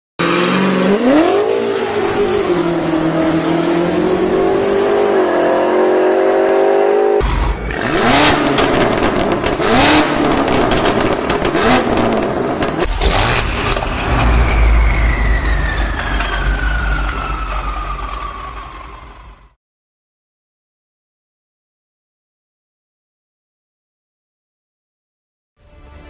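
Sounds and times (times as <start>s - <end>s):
car engine revving and idling: 0.2s - 19.6s.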